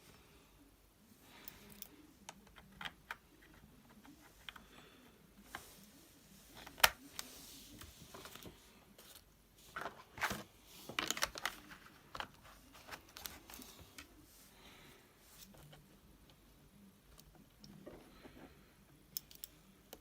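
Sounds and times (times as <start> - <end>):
light plastic rustling: 5.4 - 15.9.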